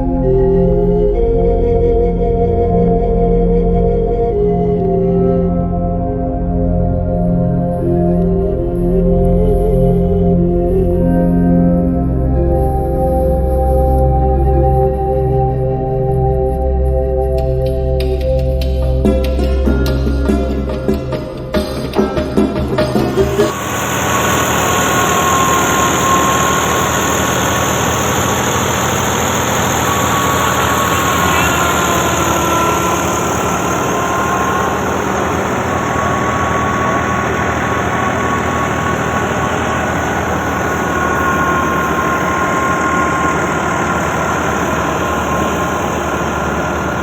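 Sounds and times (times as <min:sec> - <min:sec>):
harvester engine drone: 0:00.0 - 0:47.0
thin whine: 0:00.0 - 0:47.0.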